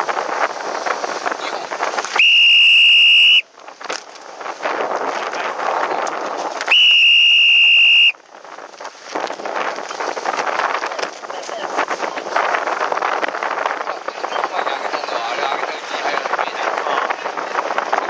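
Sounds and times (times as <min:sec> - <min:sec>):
wind noise on microphone: 0:00.0 - 0:18.0
high-pitched whistle blasts: 0:02.2 - 0:03.4, 0:06.7 - 0:08.1.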